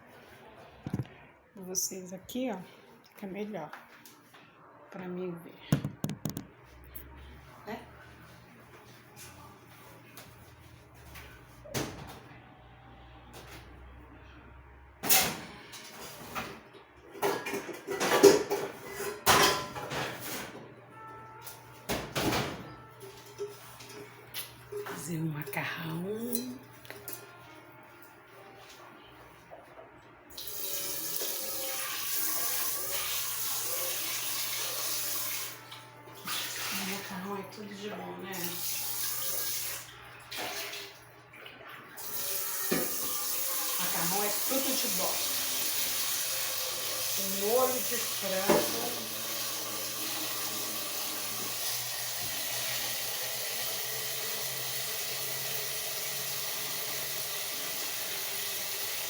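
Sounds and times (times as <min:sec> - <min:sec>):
tap running water: 0:30.3 - 0:37.2, 0:38.3 - 0:59.0.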